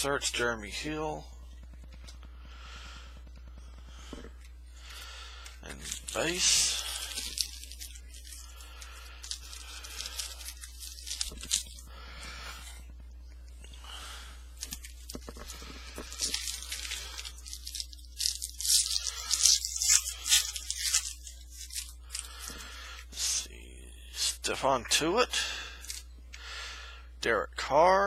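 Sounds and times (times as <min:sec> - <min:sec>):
foil wrapper tearing and crinkling: 0:04.8 - 0:12.8, 0:14.6 - 0:23.5.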